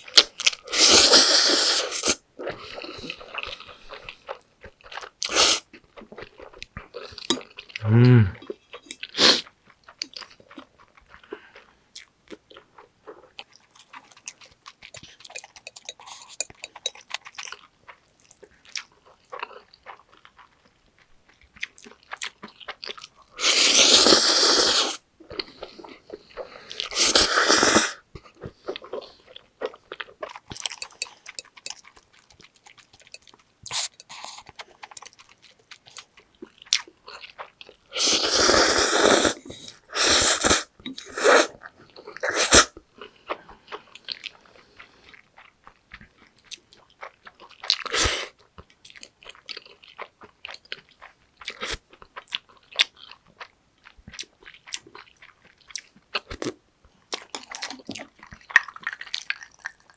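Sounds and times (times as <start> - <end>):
close chewing and biting: 1.8 - 39.8, 40.8 - 59.9
wet mouth clicks: 15.0 - 17.6, 30.5 - 31.8, 33.0 - 35.2.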